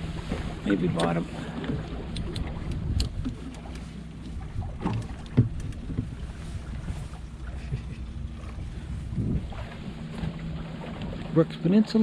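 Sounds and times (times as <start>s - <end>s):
boat engine idling: 0.0s - 12.0s
water noise: 0.0s - 12.0s
wind: 0.0s - 12.0s.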